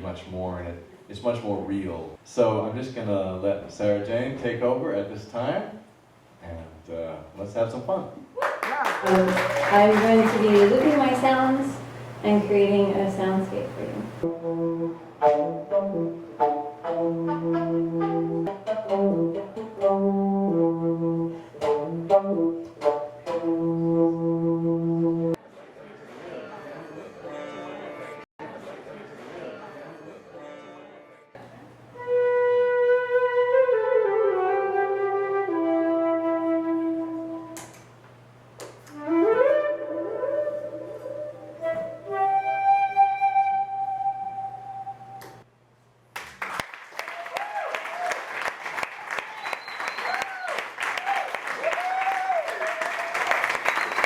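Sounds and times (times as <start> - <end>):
flute-like wind instrument notes: 14.2 - 25.4, 32.0 - 37.6, 38.9 - 45.4.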